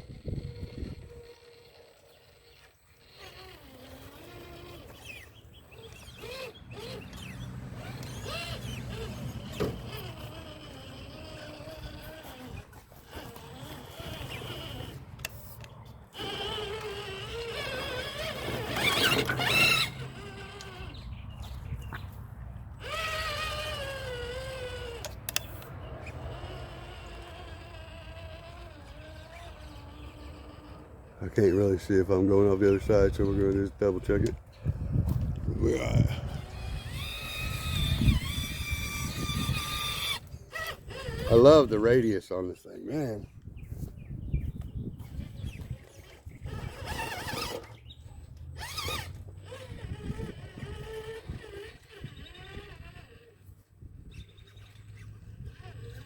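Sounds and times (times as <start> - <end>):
rc car electric motor whining: 0.0 - 56.0
sharp clicks: 24.0 - 26.2.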